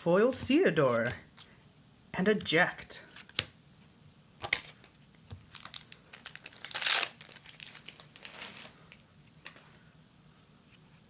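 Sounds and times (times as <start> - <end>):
plastic wrapper crinkling and tearing: 5.4 - 9.0.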